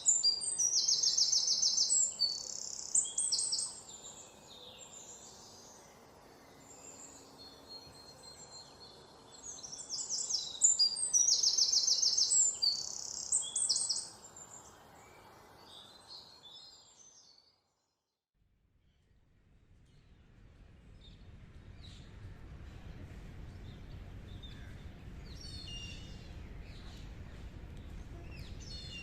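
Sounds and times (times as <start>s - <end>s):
songbirds chirping and singing: 0.0s - 17.5s.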